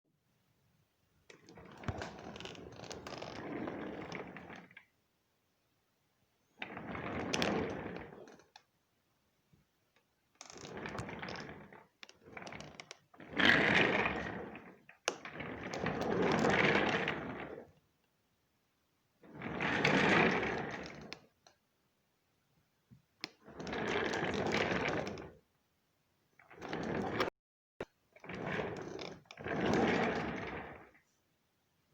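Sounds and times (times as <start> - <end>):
office chair castors rolling: 1.4 - 4.8, 6.6 - 8.5, 10.5 - 17.7, 19.3 - 21.1, 23.5 - 25.4, 26.5 - 27.3, 28.2 - 31.0.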